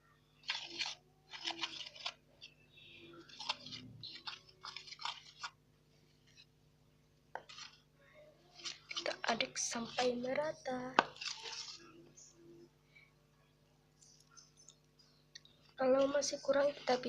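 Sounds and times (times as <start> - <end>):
thick dough being stirred: 0.4 - 6.6, 7.4 - 12.3, 15.6 - 17.0.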